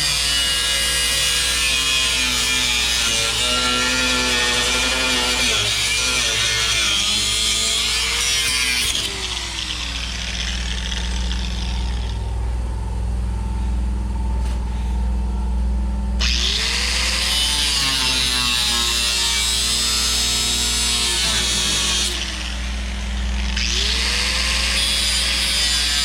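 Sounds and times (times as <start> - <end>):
power tool cutting sheet metal: 0.0 - 12.3, 16.2 - 26.0
steady low hum: 9.0 - 25.1.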